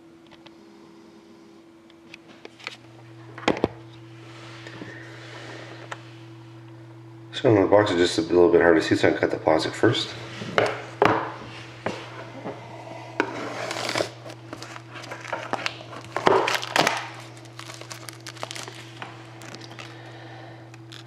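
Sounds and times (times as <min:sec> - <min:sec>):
faint steady hum: 0:00.0 - 0:21.0
plastic wrap crinkling: 0:13.6 - 0:21.0.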